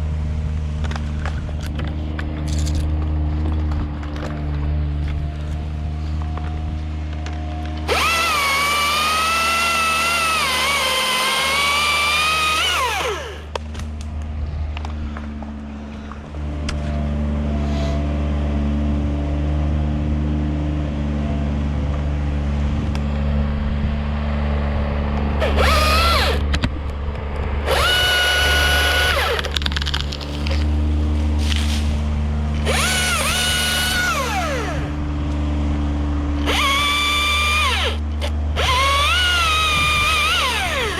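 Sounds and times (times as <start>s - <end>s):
low engine hum: 0.0s - 40.9s
chainsaw revving in bursts: 7.8s - 13.6s, 25.4s - 26.4s, 27.6s - 29.6s, 32.5s - 35.1s, 36.4s - 40.9s.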